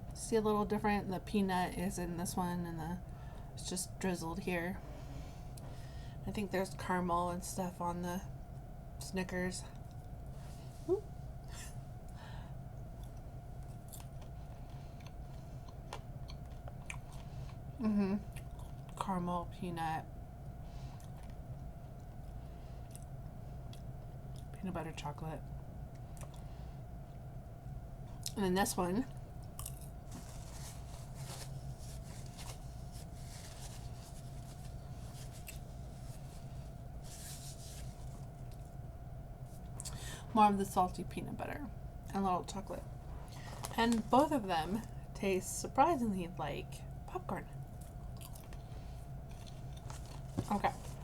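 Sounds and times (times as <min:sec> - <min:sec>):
low background hum: 0:00.0 - 0:51.0
person chewing popcorn: 0:12.8 - 0:19.0, 0:20.9 - 0:24.5, 0:25.9 - 0:26.5, 0:29.1 - 0:36.8, 0:47.7 - 0:51.0.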